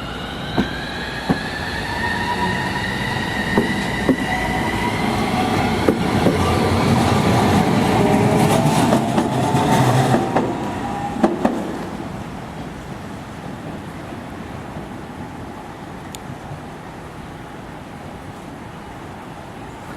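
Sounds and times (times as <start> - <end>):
train motor whine: 0.0 - 11.5
train wheels clacking over rail joints: 5.4 - 11.9.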